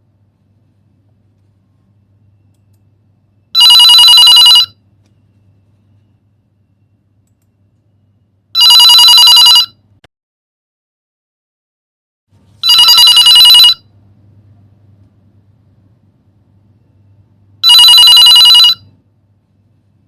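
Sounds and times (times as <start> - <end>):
telephone ringing: 3.5 - 4.8, 8.6 - 9.8, 12.6 - 13.9, 17.6 - 19.0.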